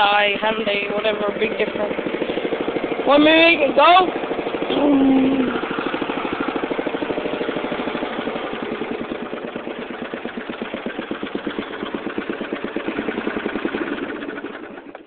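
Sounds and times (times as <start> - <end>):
riding mower engine puttering: 0.0 - 15.0.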